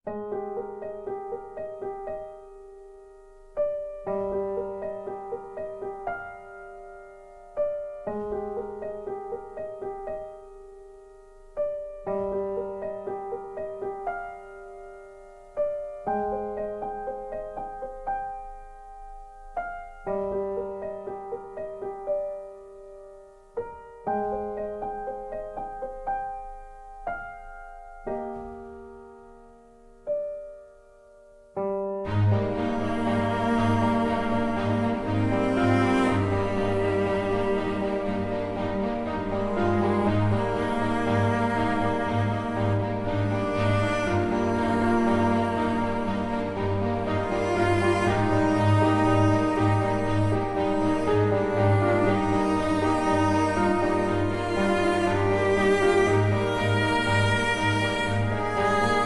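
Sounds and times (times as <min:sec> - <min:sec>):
gentle solo piano: 0:00.1 - 0:59.0.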